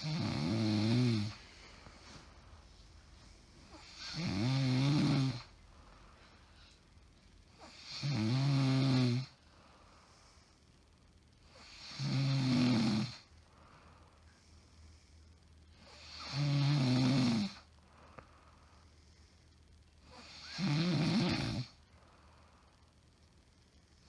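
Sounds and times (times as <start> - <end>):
woman snoring: 0.0 - 1.4, 3.7 - 5.5, 7.6 - 9.4, 11.5 - 13.3, 15.8 - 17.7, 20.0 - 21.8.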